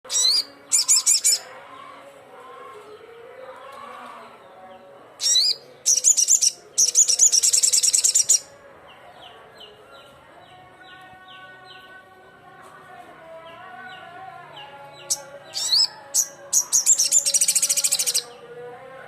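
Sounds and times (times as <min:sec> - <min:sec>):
bird trilling chirps: 0:00.1 - 0:01.5, 0:05.2 - 0:08.5, 0:15.0 - 0:18.4.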